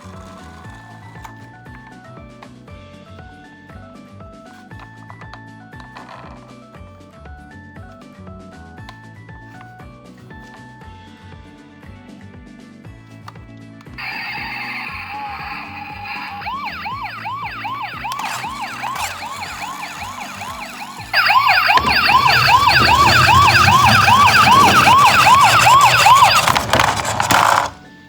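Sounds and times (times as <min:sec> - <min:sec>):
toy siren sweeping up and down: 0:14.0 - 0:27.8.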